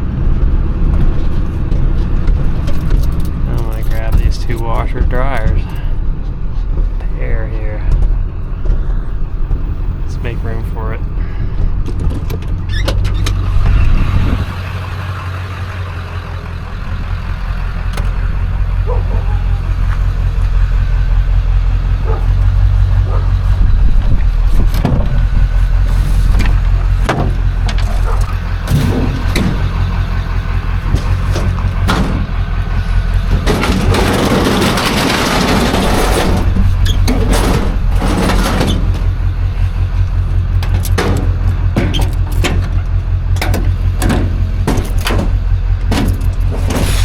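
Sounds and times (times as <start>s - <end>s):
vehicle engine idling: 0.0s - 47.0s
scrap metal knocks and clanks: 21.9s - 47.0s
rough scraping noise: 23.4s - 40.2s, 46.4s - 47.0s.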